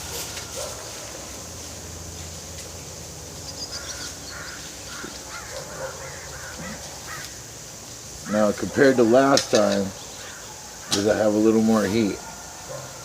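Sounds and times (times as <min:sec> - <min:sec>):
short bird calls: 0:03.4 - 0:07.4.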